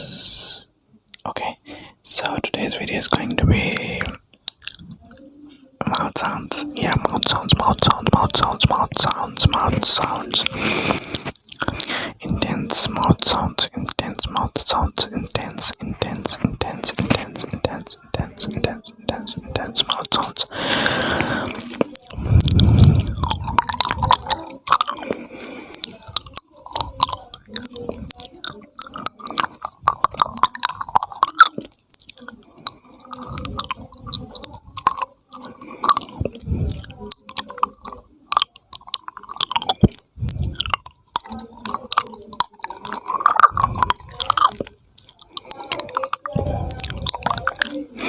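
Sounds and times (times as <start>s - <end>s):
wet lip and tongue clicking: 2.2s - 5.2s, 5.8s - 48.0s.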